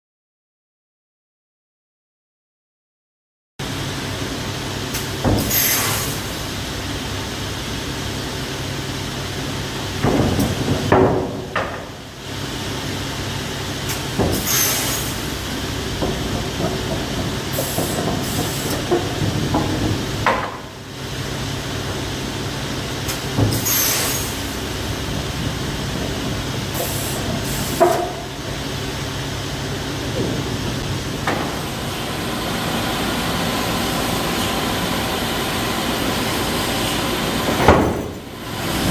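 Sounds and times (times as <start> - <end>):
compressed air hissing: 5.0 - 6.5, 13.9 - 15.6, 17.5 - 18.9, 23.1 - 24.6, 26.7 - 28.3
saw machine hum: 12.3 - 38.9
saw cutting and clunking: 13.9 - 20.7.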